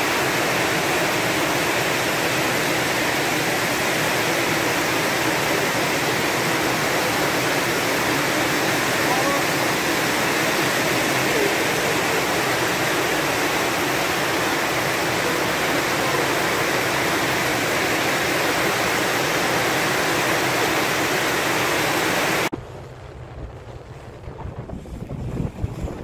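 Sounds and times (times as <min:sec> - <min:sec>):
wind and water rushing: 0:00.0 - 0:26.0
low wind rumble on microphone: 0:22.5 - 0:26.0.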